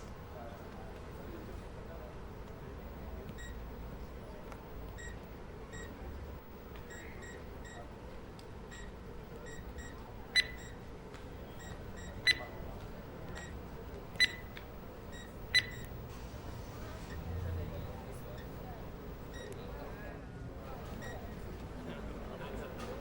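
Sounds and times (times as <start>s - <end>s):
medical equipment beeps: 2.8s - 3.7s, 4.7s - 8.0s, 8.6s - 20.0s, 20.6s - 21.7s
loud sharp beeps: 5.0s - 7.9s, 8.7s - 10.8s, 11.4s - 12.6s, 14.2s - 19.6s, 21.0s - 21.4s.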